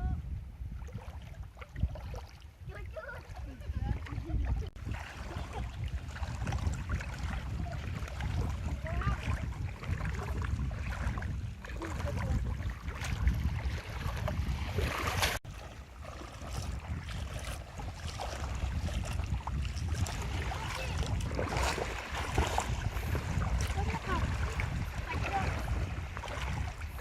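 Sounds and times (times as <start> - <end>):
boat engine rumble: 0.0 - 27.0
water noise: 0.0 - 27.0
wind: 0.0 - 27.0.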